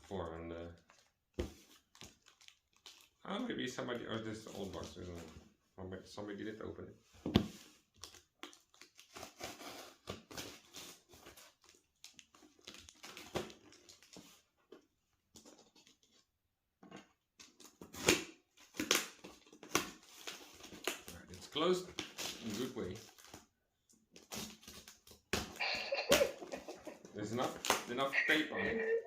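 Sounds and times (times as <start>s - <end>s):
cardboard and tape rustling: 0.1s - 3.2s, 7.2s - 28.8s.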